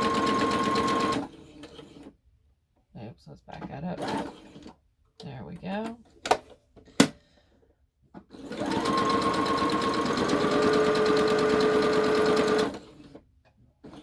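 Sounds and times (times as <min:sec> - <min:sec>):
sewing machine stitching: 0:00.0 - 0:02.1, 0:04.0 - 0:04.8, 0:08.3 - 0:13.2
sewing machine clicks: 0:08.4 - 0:13.2.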